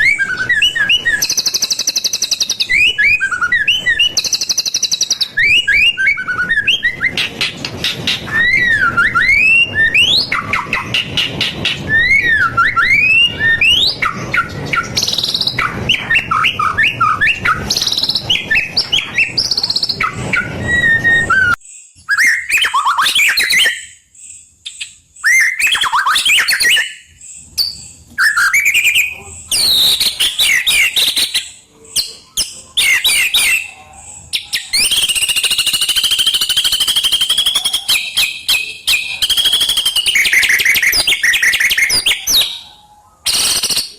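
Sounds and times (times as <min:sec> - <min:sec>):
background hiss: 0:00.0 - 0:25.6
bird singing whistles and trills: 0:00.0 - 0:43.9.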